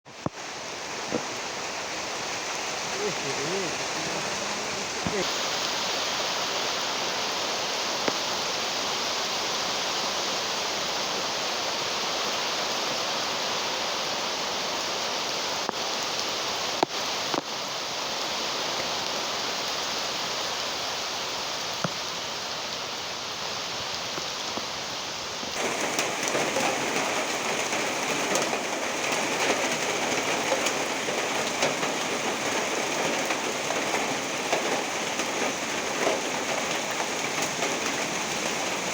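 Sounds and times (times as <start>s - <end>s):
heavy rain: 0.0s - 38.9s
raindrops pattering on a surface: 0.1s - 6.8s, 14.8s - 20.0s, 21.6s - 38.9s.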